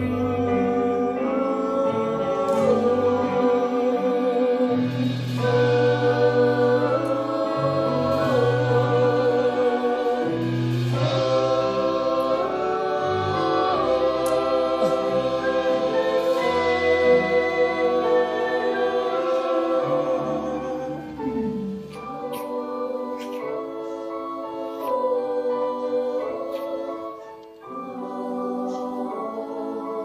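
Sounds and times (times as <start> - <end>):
musical accompaniment with bass: 0.0 - 30.0.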